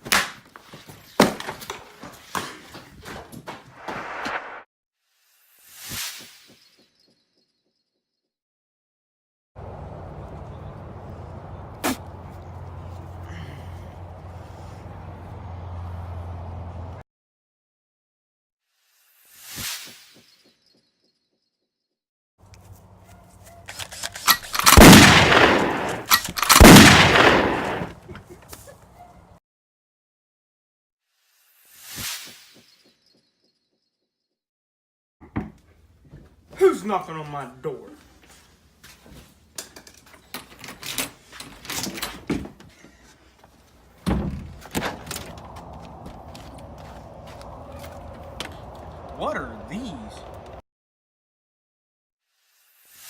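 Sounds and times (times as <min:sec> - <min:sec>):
gunshots with echo: 0:24.6 - 0:27.9.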